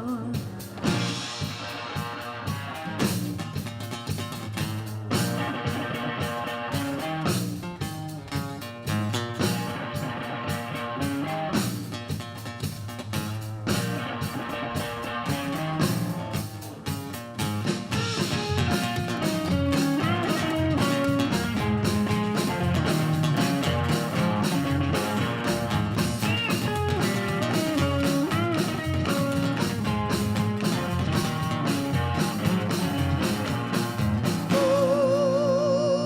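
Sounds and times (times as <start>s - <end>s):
electric guitar lead with bends: 0.0s - 36.0s
rock band playing: 0.0s - 36.0s.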